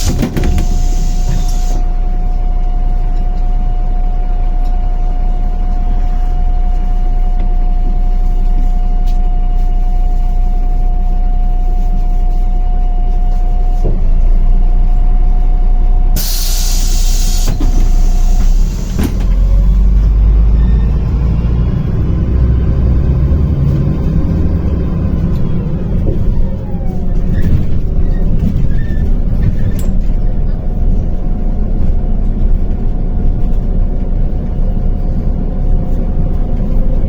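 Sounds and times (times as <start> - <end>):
compressed air hiss: 0.0 - 1.8, 16.2 - 19.2
bus engine whining: 0.0 - 37.0.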